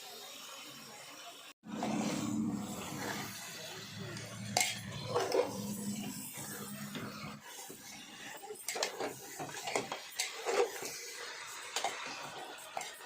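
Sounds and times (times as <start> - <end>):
low hum: 1.6 - 7.4
metal spoon stirring in pot: 1.7 - 13.0.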